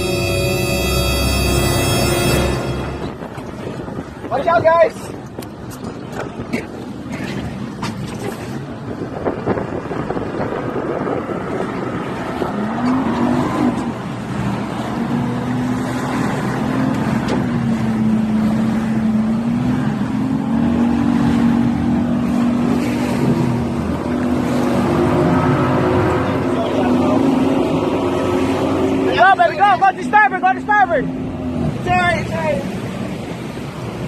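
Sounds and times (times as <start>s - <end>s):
second engine note: 0.0s - 3.3s
constant rushing noise: 0.0s - 34.0s
motorboat engine running: 0.0s - 34.0s.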